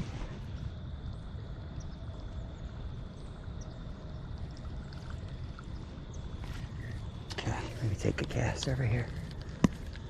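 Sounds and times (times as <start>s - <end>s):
low rumble: 0.0s - 10.0s
tiny ticks: 3.6s - 10.0s.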